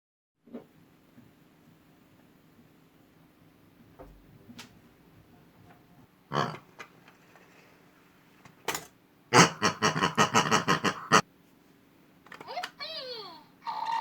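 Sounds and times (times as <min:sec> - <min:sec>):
pig oinking: 0:06.3 - 0:06.6, 0:09.3 - 0:11.2.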